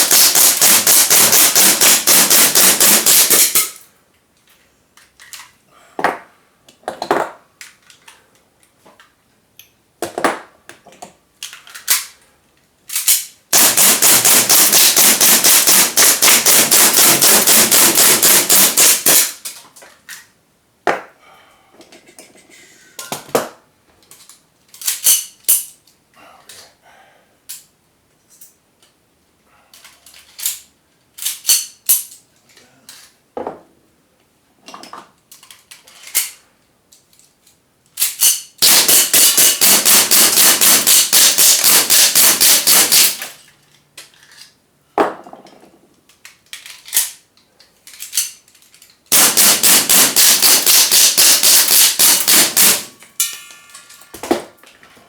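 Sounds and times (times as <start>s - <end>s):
airsoft gun firing: 0.0s - 3.8s, 13.5s - 19.4s, 38.6s - 43.3s, 49.1s - 53.0s.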